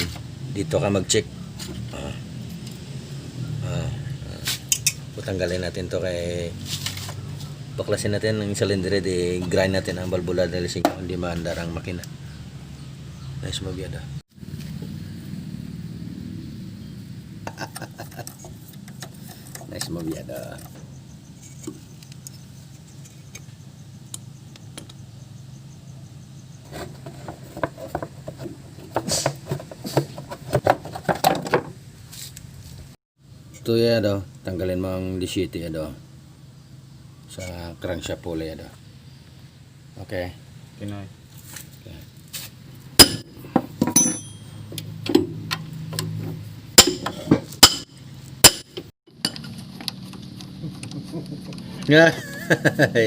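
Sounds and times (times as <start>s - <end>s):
tools striking metal parts: 4.7s - 5.0s, 43.0s - 46.2s, 46.8s - 50.3s
metal tools clinking and clattering: 43.8s - 45.2s.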